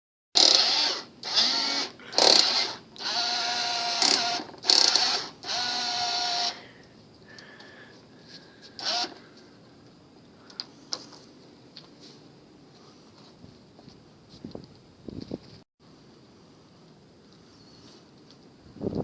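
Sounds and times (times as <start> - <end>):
small gear motors whirring: 0.4 - 6.6, 8.8 - 9.2.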